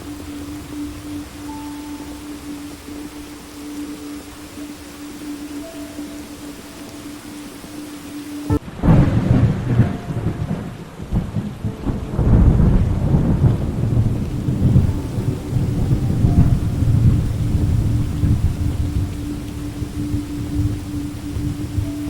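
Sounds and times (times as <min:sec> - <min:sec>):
steady rain: 0:00.0 - 0:22.0
rolling thunder: 0:08.5 - 0:22.0
thunderclap: 0:08.5 - 0:22.0.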